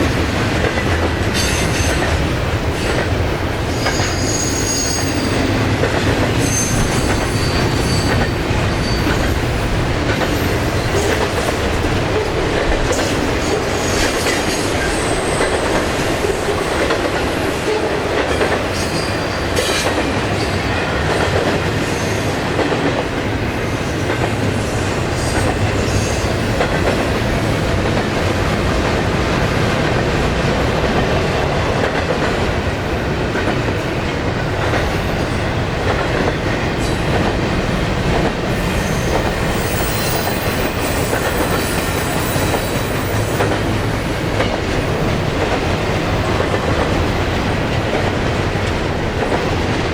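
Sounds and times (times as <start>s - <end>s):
train wheels rumbling on rails: 0.0s - 49.9s
high wheel squeals: 3.8s - 5.5s, 6.4s - 9.4s, 38.7s - 43.4s.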